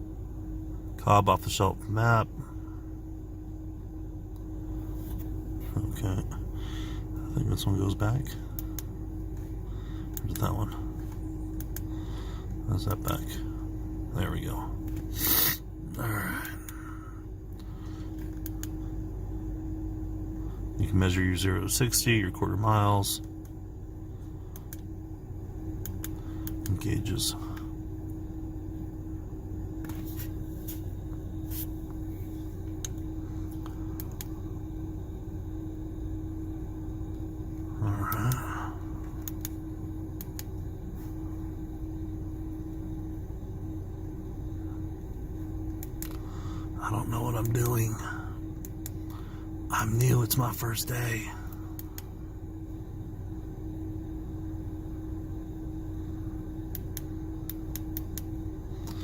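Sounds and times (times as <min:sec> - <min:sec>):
low hum inside truck cab: 0:00.0 - 0:59.0
faint light clicks: 0:45.8 - 0:46.3.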